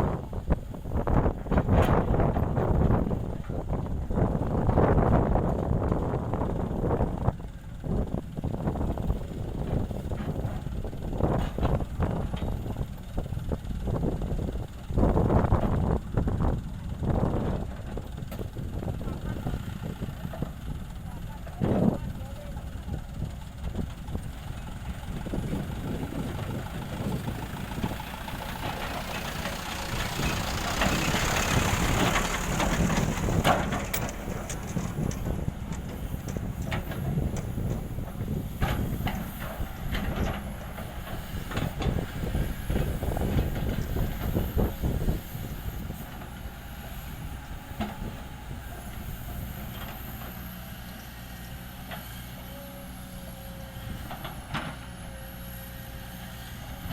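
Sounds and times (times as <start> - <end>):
diesel machinery rumbling: 0.0 - 56.9
knocks and clatters: 27.3 - 42.0.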